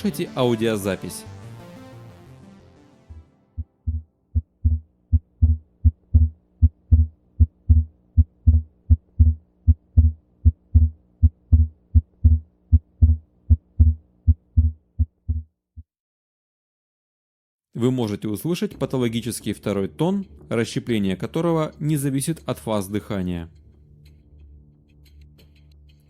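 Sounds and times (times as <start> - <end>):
faint steady hum: 3.6 - 15.4
heartbeat: 3.6 - 15.9.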